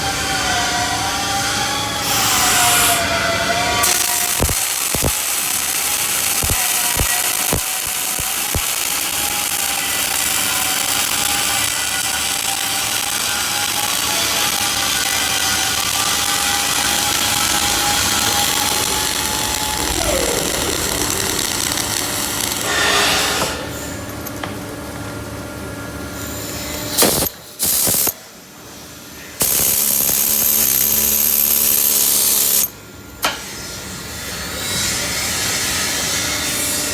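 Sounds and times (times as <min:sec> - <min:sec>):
workshop noise: 0:00.0 - 0:36.8
welding arc crackling and sizzling: 0:02.0 - 0:24.2, 0:26.9 - 0:28.3, 0:29.4 - 0:32.7.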